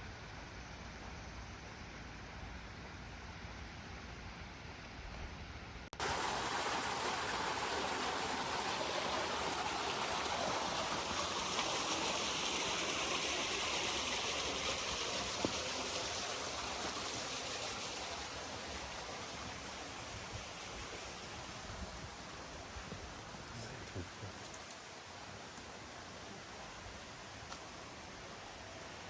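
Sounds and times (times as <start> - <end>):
rushing water: 6.0 - 29.0.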